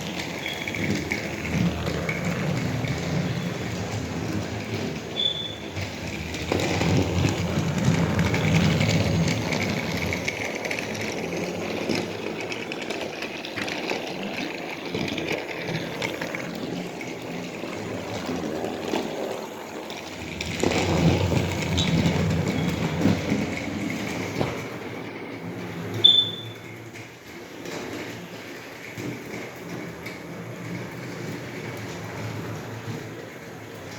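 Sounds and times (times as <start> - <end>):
toy train motor hum: 0.0 - 24.2
toy train wheels rattling: 0.0 - 24.3.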